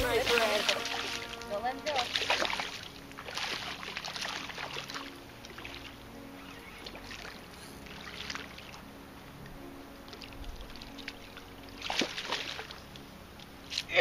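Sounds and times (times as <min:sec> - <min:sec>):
water splashing from thrashing fish: 0:00.0 - 0:05.8, 0:11.8 - 0:12.8.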